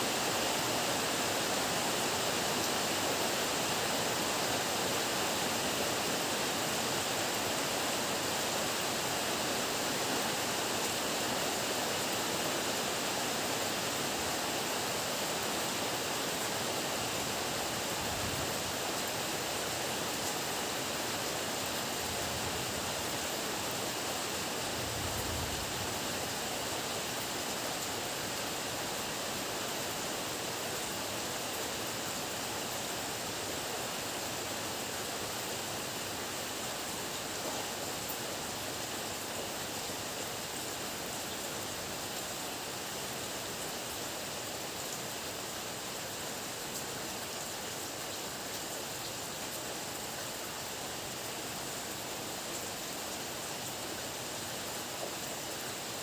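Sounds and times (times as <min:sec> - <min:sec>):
heavy rain pouring: 0:15.6 - 0:30.8.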